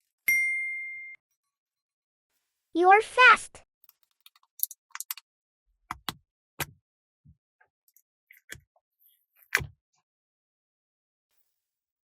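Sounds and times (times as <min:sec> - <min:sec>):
small hard objects clicking: 0:03.8 - 0:05.2.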